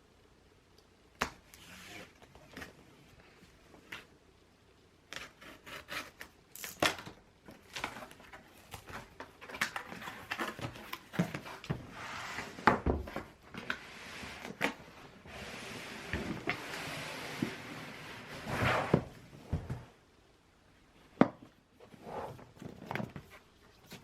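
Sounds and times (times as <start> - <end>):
rustling: 20.9 - 24.0.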